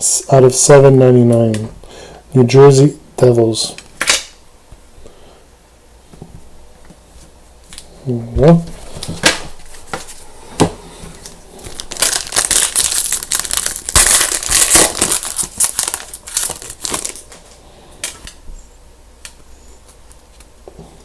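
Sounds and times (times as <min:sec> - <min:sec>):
foil wrapper crinkling: 0:11.1 - 0:18.4.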